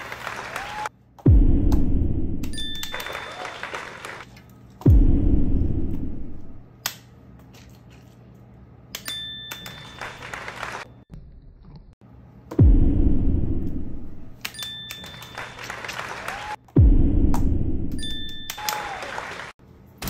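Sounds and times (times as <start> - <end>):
deep boom dropping in pitch: 1.3 - 2.4, 4.9 - 6.4, 12.6 - 14.2, 16.8 - 17.9
high ding: 18.0 - 18.6.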